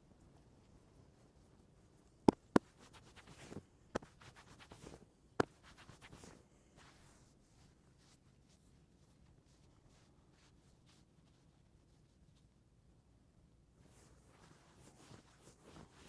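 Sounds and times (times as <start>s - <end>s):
hands smacking head: 2.3s - 6.2s
hands rubbing hair and skin: 2.3s - 12.5s, 13.9s - 16.0s.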